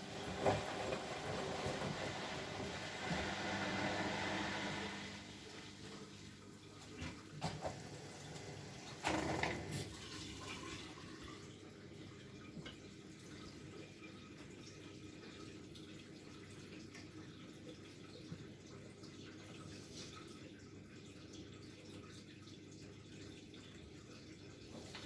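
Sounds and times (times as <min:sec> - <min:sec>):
water splashing in washing machine: 0:00.0 - 0:25.0
water trickling: 0:00.0 - 0:25.0.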